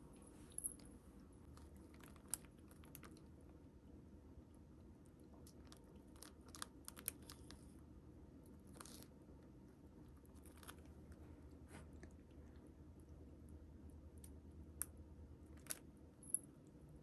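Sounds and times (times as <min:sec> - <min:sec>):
small clicks and crinkles: 0:00.5 - 0:03.6, 0:05.0 - 0:07.8, 0:08.4 - 0:12.7, 0:14.2 - 0:16.4.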